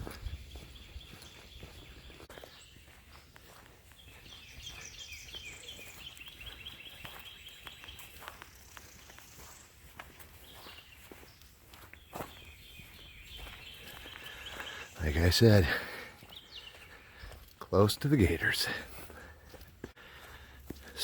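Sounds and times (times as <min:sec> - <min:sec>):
bird chirping: 0:00.0 - 0:19.2
footsteps on woodland trail: 0:00.0 - 0:21.0.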